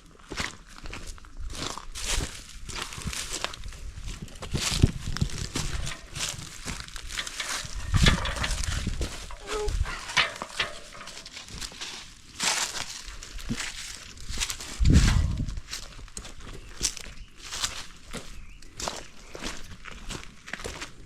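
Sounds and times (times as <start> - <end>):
footsteps in grass and leaves: 0.2 - 21.0
knocks of fence panels handled: 7.1 - 11.4.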